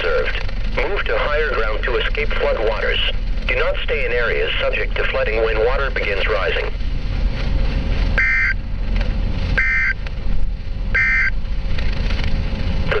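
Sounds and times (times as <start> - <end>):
radio hiss and hum: 0.0 - 6.9, 12.8 - 13.0
buzzy data tones: 8.2 - 8.6, 9.6 - 10.0, 10.9 - 11.4.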